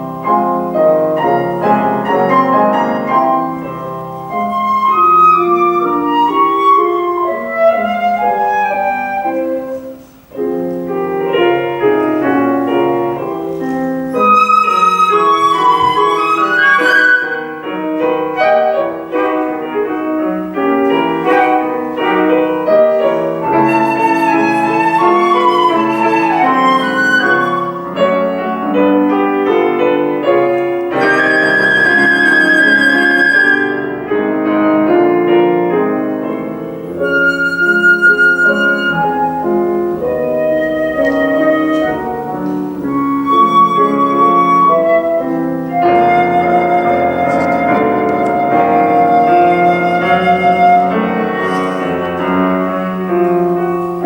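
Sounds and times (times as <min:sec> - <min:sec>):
piano accompaniment: 0:00.0 - 0:54.0
flute playing fast runs: 0:04.3 - 0:09.9, 0:14.0 - 0:19.8, 0:20.8 - 0:28.0, 0:30.8 - 0:34.0, 0:37.0 - 0:52.4.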